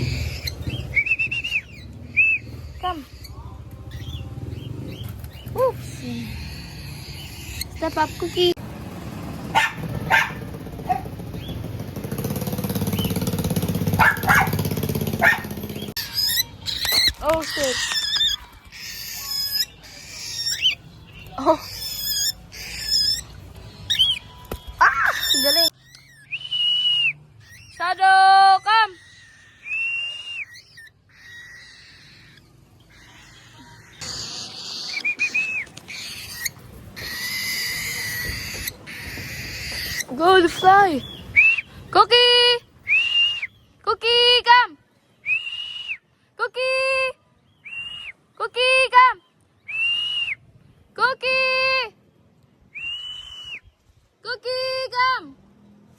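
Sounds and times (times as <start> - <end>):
low engine hum: 0.0 - 16.0
cockatiel screechy calls: 6.0 - 8.6, 16.0 - 20.8, 21.6 - 23.3, 24.8 - 26.4, 28.6 - 40.2
dog barking: 9.5 - 11.1, 14.0 - 14.6, 15.2 - 15.6.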